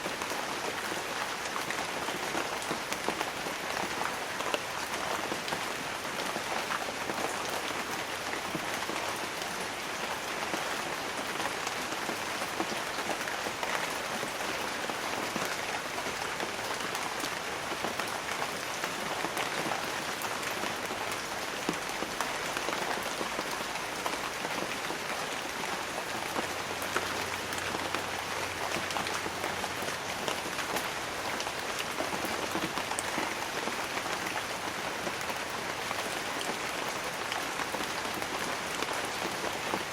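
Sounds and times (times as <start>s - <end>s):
light rain on leaves: 0.0s - 39.9s
raindrops striking close by: 0.0s - 39.9s.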